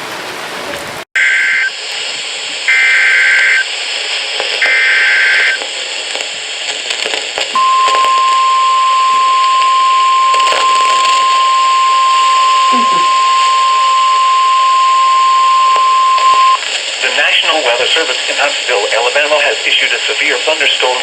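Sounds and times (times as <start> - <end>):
steady warning alarm tone: 1.2 - 1.8, 2.7 - 3.7, 4.6 - 5.6, 7.6 - 16.6
radio hiss: 1.2 - 21.0
digital data bursts: 2.7 - 5.7, 10.2 - 16.6.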